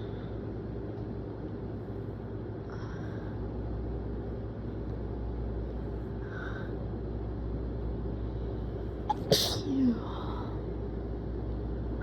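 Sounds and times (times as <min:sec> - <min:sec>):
low background hum: 0:00.0 - 0:12.0
faint breaths: 0:01.9 - 0:03.8, 0:05.7 - 0:07.1.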